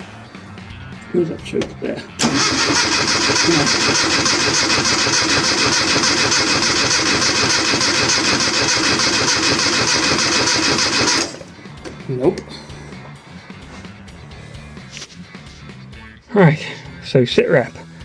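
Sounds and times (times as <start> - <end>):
car engine cranking on starter motor: 1.6 - 12.1.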